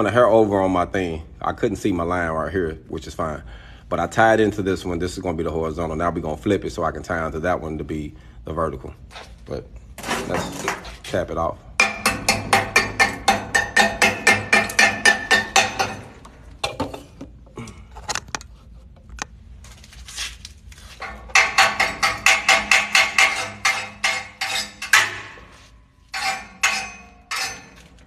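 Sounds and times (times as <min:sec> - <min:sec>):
chipping hammer striking weld: 0:11.8 - 0:16.2, 0:21.2 - 0:25.5, 0:26.1 - 0:28.0.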